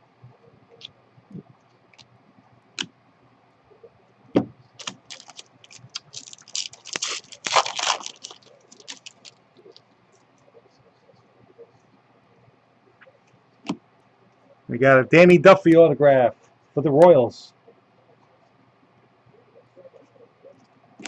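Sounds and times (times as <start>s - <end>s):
foil wrapper crinkling and tearing: 4.8s - 9.4s.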